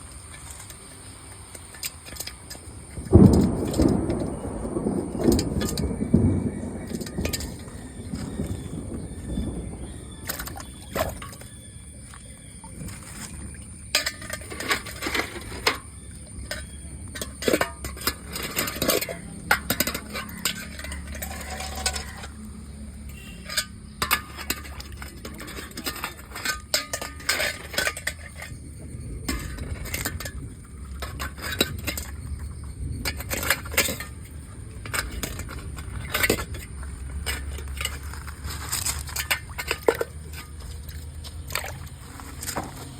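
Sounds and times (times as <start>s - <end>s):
hard objects clinking: 13.1s - 42.9s.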